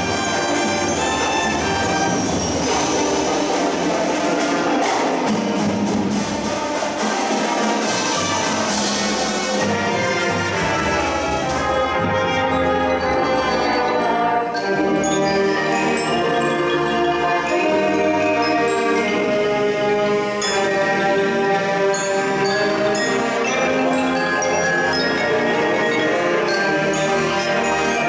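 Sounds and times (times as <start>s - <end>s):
mallet percussion ringing: 0.0s - 4.5s, 7.9s - 28.0s
drum and cymbal hits: 0.0s - 12.2s
marching band playing: 0.0s - 28.0s.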